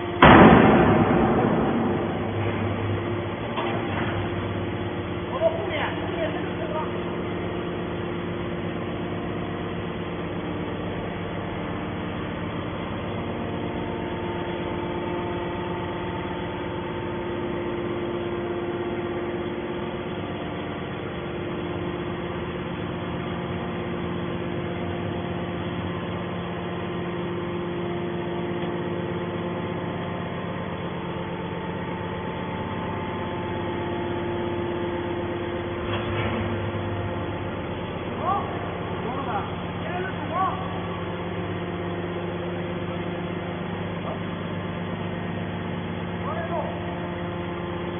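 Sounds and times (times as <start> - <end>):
hydraulic drive humming: 0.0 - 5.3.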